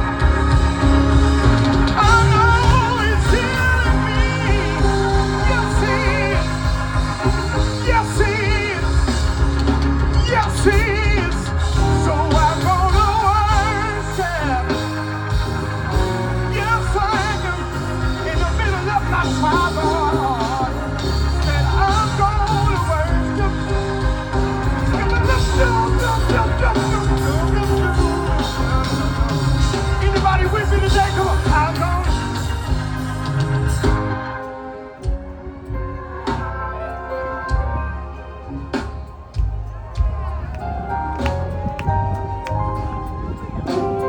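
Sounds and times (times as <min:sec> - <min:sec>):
singers with vibrato: 0:00.0 - 0:34.8
band with deep bass: 0:00.0 - 0:44.0.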